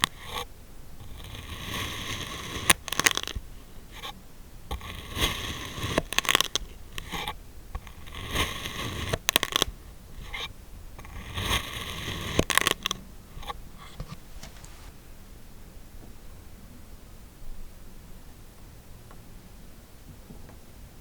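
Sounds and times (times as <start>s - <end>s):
sand gritty scraping: 11.2s - 15.0s
sand crackling: 14.2s - 15.0s.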